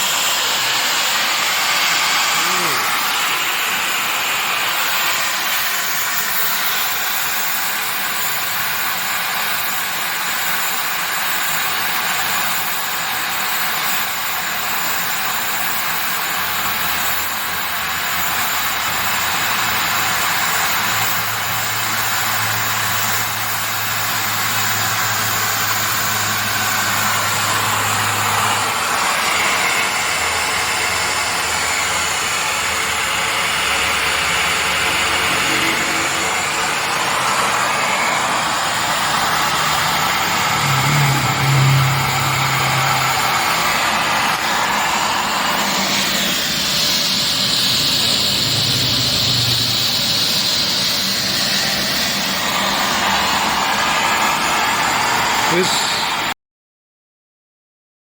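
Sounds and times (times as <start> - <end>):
machine rushing hiss: 0.0 - 56.3
low hum: 34.6 - 46.6.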